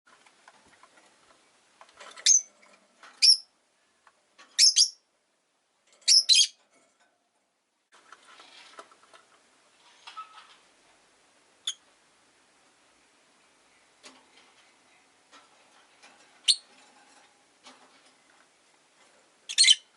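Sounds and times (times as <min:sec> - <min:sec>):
lovebird chirping: 0:03.2 - 0:03.5, 0:04.6 - 0:05.0, 0:06.1 - 0:06.6, 0:11.6 - 0:11.8, 0:16.4 - 0:16.7, 0:19.5 - 0:19.9.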